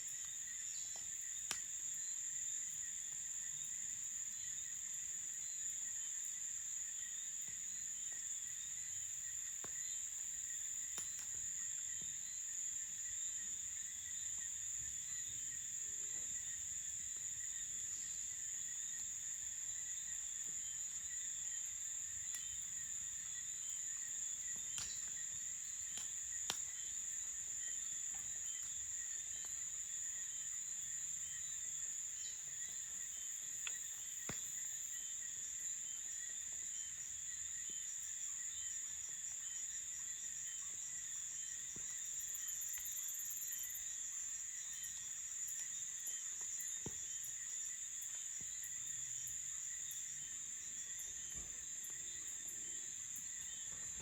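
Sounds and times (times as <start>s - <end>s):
crickets trilling: 0.0s - 54.0s
lower repeating insect chirp: 0.0s - 54.0s
campfire crackling pops: 0.9s - 1.8s, 9.5s - 9.8s, 10.8s - 12.1s, 23.8s - 29.6s, 33.6s - 34.8s.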